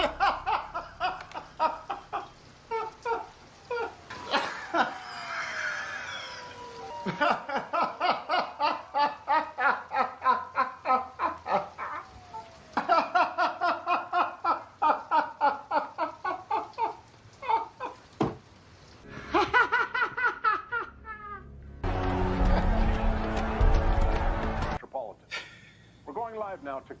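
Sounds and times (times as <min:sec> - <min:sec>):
hearty laughter: 0:00.0 - 0:06.0, 0:07.0 - 0:12.1, 0:12.8 - 0:18.0, 0:19.1 - 0:21.4.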